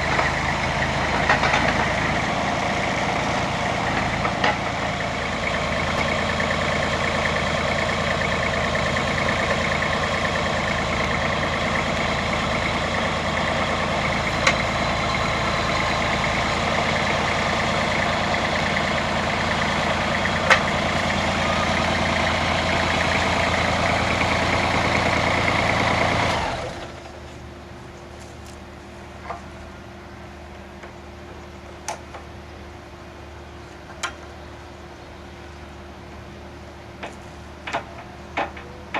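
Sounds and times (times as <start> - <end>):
machine engine running: 0.0 - 27.4.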